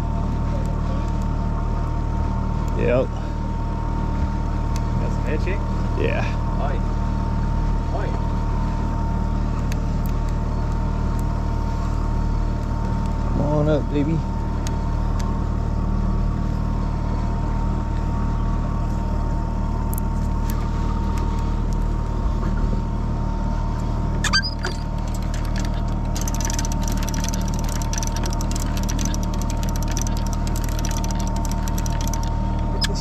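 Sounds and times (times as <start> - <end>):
boat engine humming: 0.0 - 33.0
rapid clicking: 24.2 - 33.0.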